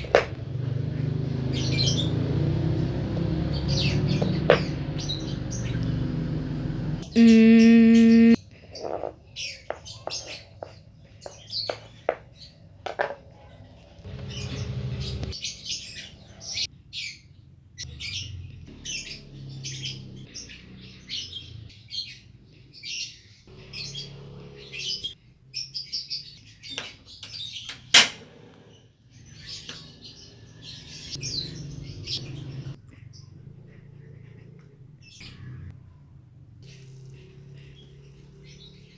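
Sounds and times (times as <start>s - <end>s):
bird chirping: 7.0s - 8.9s.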